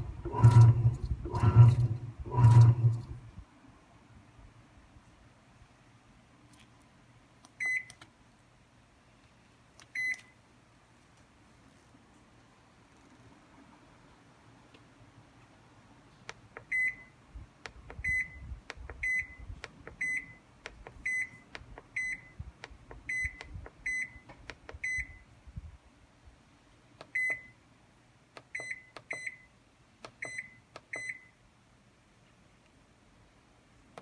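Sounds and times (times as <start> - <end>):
short electronic beeps: 18.0 - 19.4, 23.1 - 24.2.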